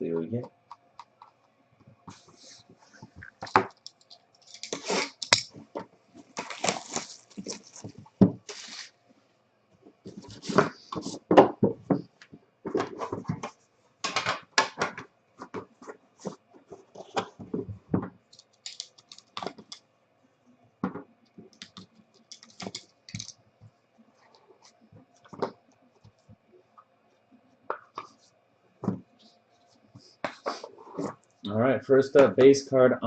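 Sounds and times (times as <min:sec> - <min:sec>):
wrapper and cardboard crinkling: 0:06.2 - 0:08.9.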